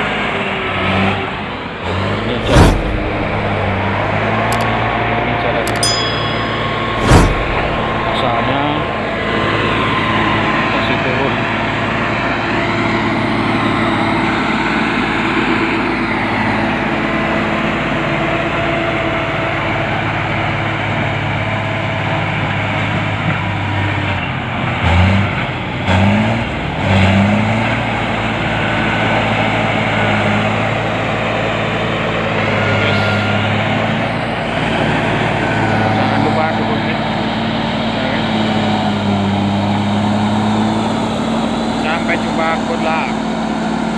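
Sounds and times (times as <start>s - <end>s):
heavy diesel engine revving: 0.0s - 4.6s.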